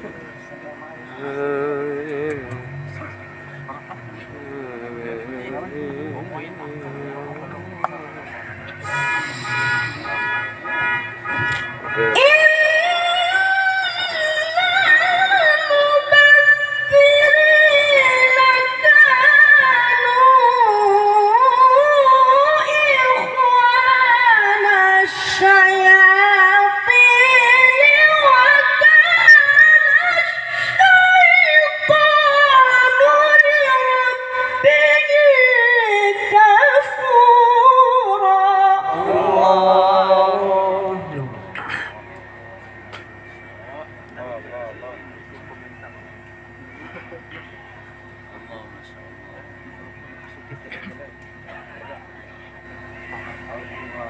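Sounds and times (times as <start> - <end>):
person reciting melismatic chant: 1.2 - 10.8, 11.6 - 13.6, 38.8 - 41.6.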